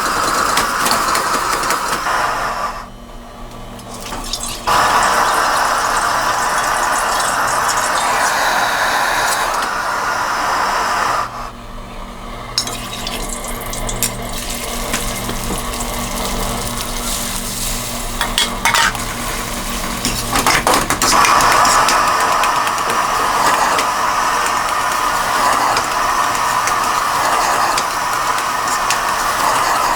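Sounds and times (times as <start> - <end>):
frying hiss: 0.0 - 2.9, 3.8 - 11.6, 12.6 - 29.9
metal utensil clinking on cookware: 18.2 - 19.1.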